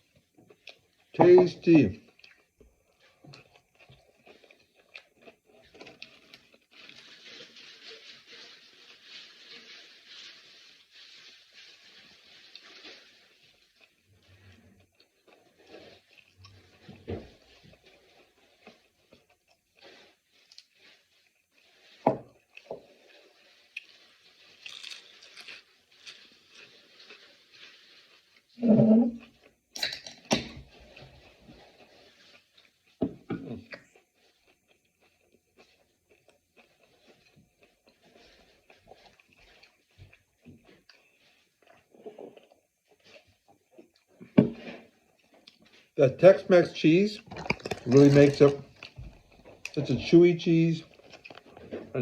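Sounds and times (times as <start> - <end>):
person chewing crunchy chips: 0.0 - 52.0.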